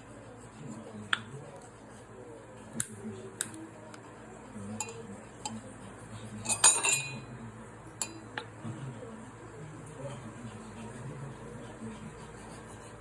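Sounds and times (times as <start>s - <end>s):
utensils clinking on dishes: 4.8s - 5.6s, 6.4s - 7.3s, 8.0s - 8.2s.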